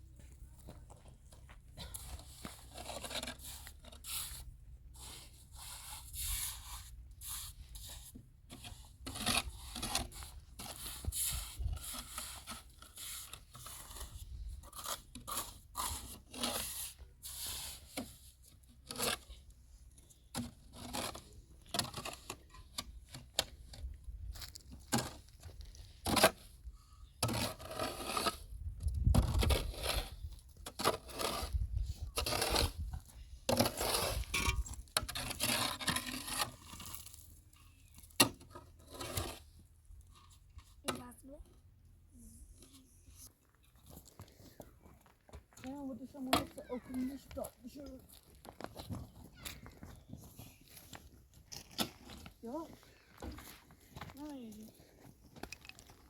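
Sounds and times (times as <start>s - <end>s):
scraping rubbing and tearing: 5.0s - 19.4s, 27.2s - 39.6s.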